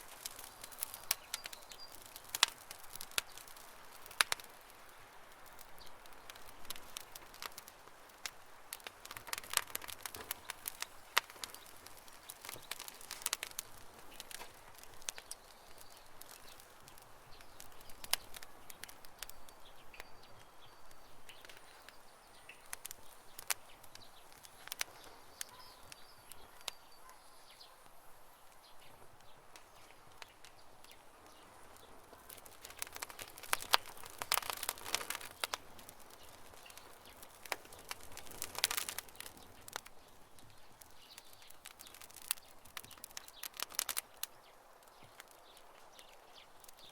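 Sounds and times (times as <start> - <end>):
campfire crackling and popping: 0.0 - 46.9
faint bird chirps: 15.1 - 38.5.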